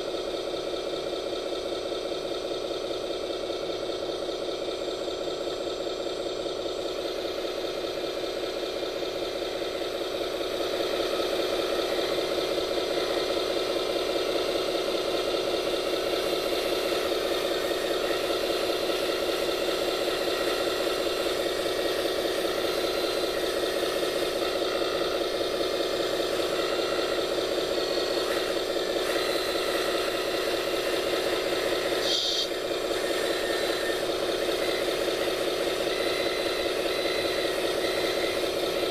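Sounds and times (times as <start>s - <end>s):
toy machine motor whirring: 10.7s - 38.9s.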